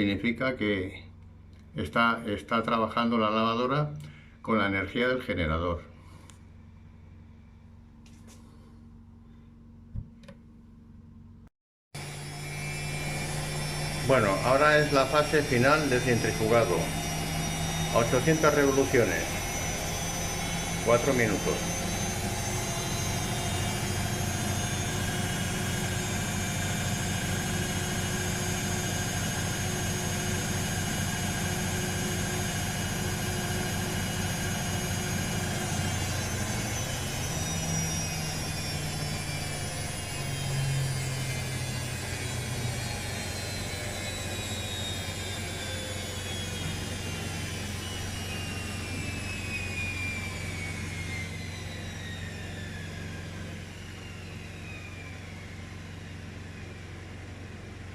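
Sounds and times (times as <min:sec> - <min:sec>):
generator engine running: 0:12.0 - 0:57.9
washing machine spin whine: 0:12.0 - 0:57.9.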